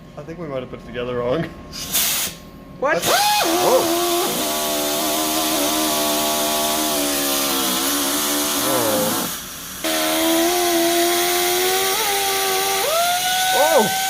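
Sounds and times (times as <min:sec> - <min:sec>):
air die grinder whine: 0:03.0 - 0:14.0.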